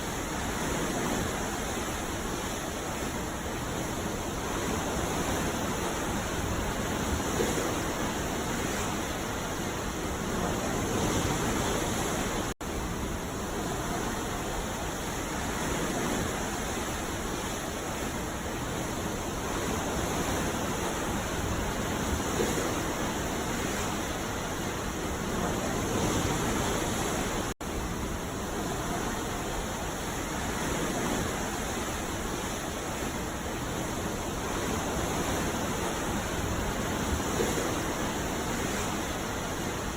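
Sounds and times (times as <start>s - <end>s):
ocean waves breaking on beach: 0.0s - 39.9s.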